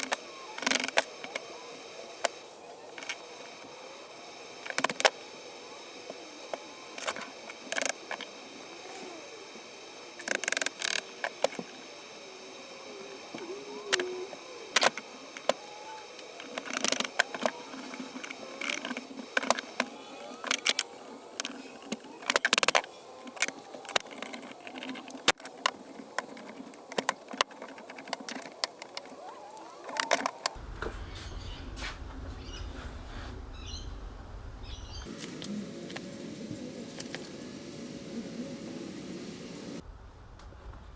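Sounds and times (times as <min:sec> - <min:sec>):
faint chirps: 0:00.0 - 0:31.6, 0:34.6 - 0:39.8
steady high hum: 0:00.0 - 0:32.3, 0:34.0 - 0:39.9.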